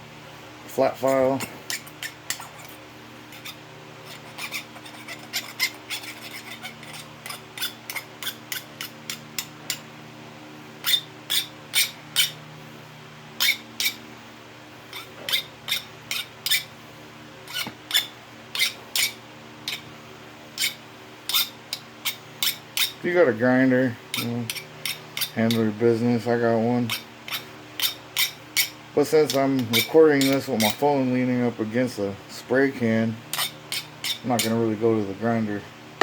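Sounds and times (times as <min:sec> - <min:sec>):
file rasping on copper pipe: 0:01.7 - 0:09.8, 0:10.8 - 0:12.4, 0:13.4 - 0:14.0, 0:14.9 - 0:16.7, 0:17.5 - 0:19.9, 0:20.6 - 0:23.0, 0:24.1 - 0:25.8, 0:26.8 - 0:30.8, 0:33.3 - 0:34.6.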